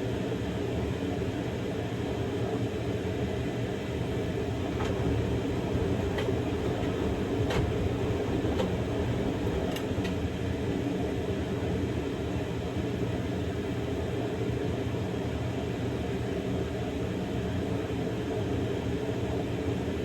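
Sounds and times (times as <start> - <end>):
washing machine drum rumble: 4.6 - 10.3.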